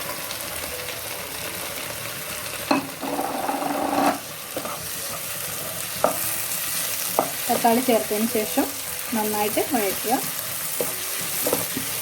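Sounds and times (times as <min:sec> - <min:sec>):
onions sizzling in a pan: 0:00.0 - 0:12.0
spatula scraping pan: 0:03.0 - 0:05.1.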